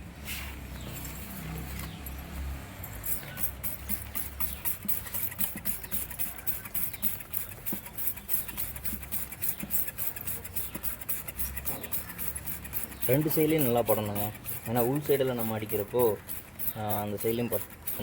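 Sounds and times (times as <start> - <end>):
rusty chain clicking: 2.8 - 18.0.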